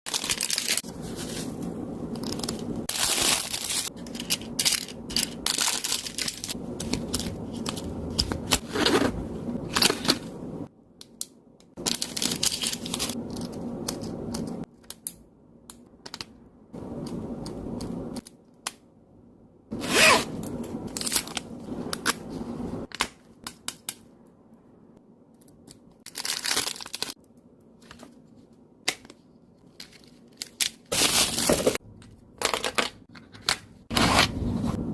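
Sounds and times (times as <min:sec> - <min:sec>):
plastic packaging crinkling and tearing: 0:00.1 - 0:09.0, 0:11.8 - 0:13.6, 0:20.9 - 0:22.1, 0:26.0 - 0:27.2, 0:29.7 - 0:31.8.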